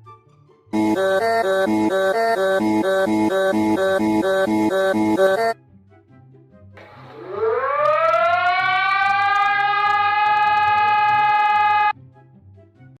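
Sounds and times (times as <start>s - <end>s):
warning siren winding up: 0.8s - 5.6s, 7.1s - 11.9s.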